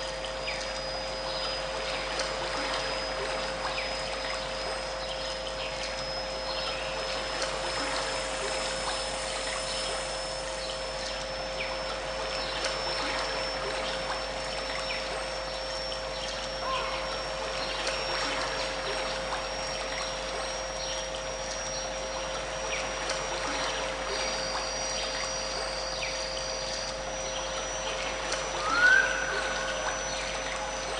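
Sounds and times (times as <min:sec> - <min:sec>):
low steady drone: 0:00.0 - 0:30.9
mid-pitched steady tones: 0:00.0 - 0:30.9
stream water trickling: 0:00.0 - 0:30.9
thin high rising tone: 0:27.1 - 0:30.9.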